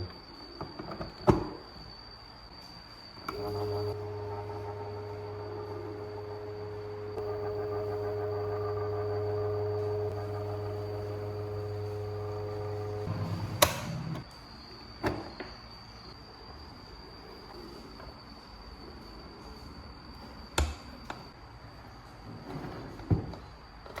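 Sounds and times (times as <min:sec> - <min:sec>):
electric motor hum: 0:03.3 - 0:14.2
sharp click: 0:13.6 - 0:14.2.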